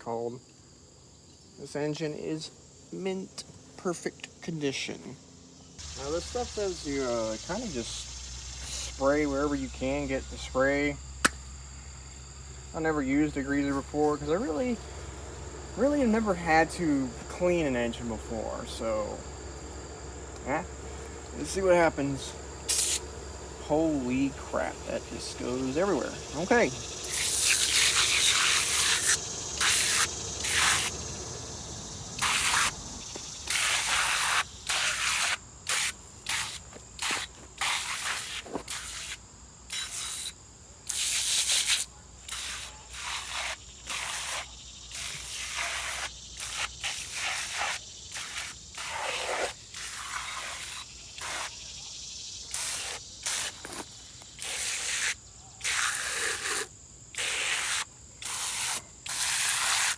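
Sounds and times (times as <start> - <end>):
aerosol can spraying: 21.4 - 23.2, 27.0 - 31.3, 32.2 - 32.8, 33.5 - 39.2, 57.2 - 59.9.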